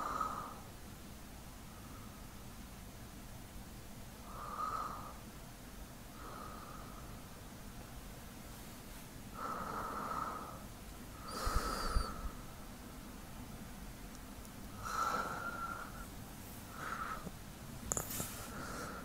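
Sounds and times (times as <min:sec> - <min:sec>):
man's slow sleep breathing: 0:00.0 - 0:00.7, 0:04.2 - 0:05.2, 0:06.1 - 0:07.3, 0:09.3 - 0:12.6, 0:14.8 - 0:17.4, 0:18.0 - 0:19.0.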